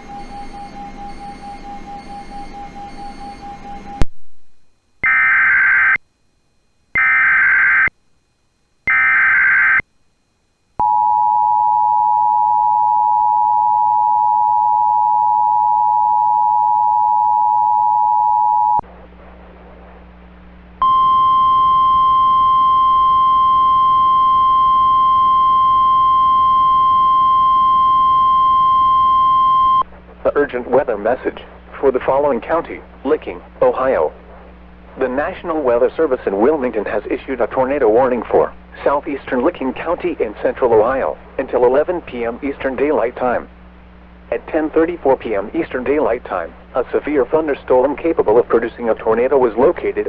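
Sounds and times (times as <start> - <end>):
single-tone warning alarm: 0.0 - 4.0, 5.0 - 6.0, 7.0 - 7.9, 8.9 - 9.8, 10.8 - 18.8, 20.8 - 29.8
two-tone attention signal: 0.0 - 4.0
warbling data bursts: 0.0 - 4.0
low hum: 0.0 - 5.0, 9.9 - 42.4.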